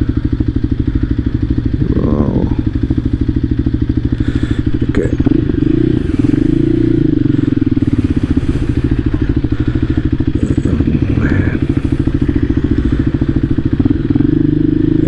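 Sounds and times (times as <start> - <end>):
motorcycle engine puttering: 0.0 - 15.0.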